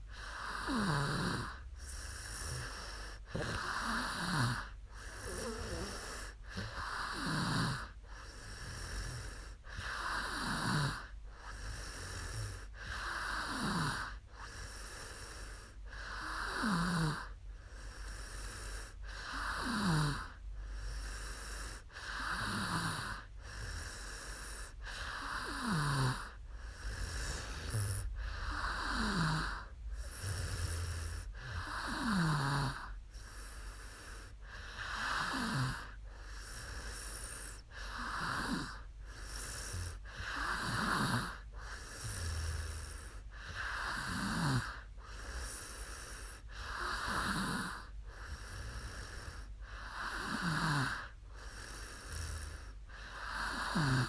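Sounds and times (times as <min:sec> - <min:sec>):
woman snoring: 0:00.0 - 0:54.0.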